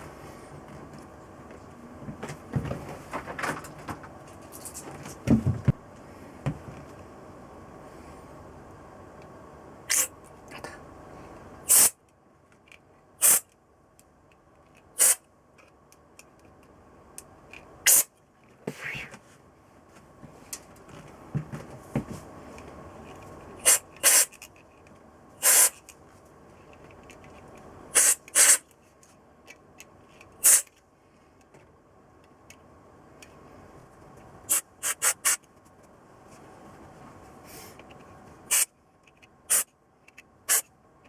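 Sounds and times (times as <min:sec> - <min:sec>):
pressurised spray hissing blasts: 0:11.7 - 0:12.0, 0:15.0 - 0:15.2, 0:25.4 - 0:25.8, 0:27.9 - 0:28.6, 0:30.4 - 0:30.6, 0:34.5 - 0:35.4, 0:38.5 - 0:38.7.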